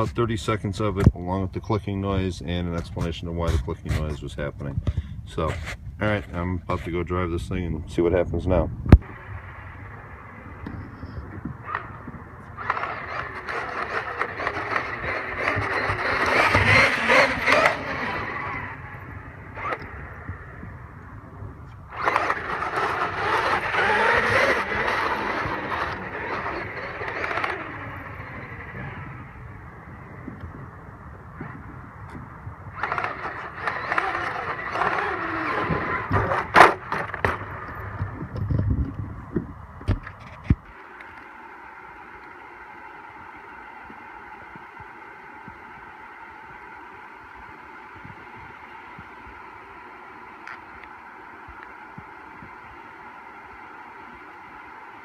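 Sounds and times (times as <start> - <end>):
tyre noise: 8.9 - 40.8
electric motor whine: 8.9 - 55.0
toy truck driving: 9.0 - 21.0, 21.8 - 39.0.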